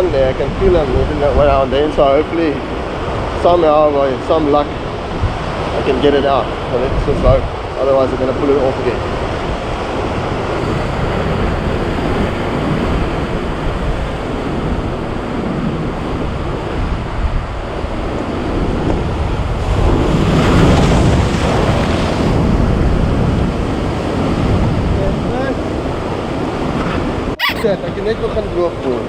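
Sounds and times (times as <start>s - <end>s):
wind buffeting microphone: 0.0s - 8.3s, 9.0s - 29.0s
surf washing against rocks: 10.6s - 26.8s.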